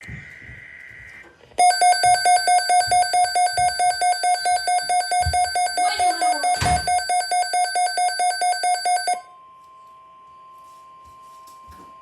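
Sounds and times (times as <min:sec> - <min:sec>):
weather radio alarm beeping: 0:00.5 - 0:09.3.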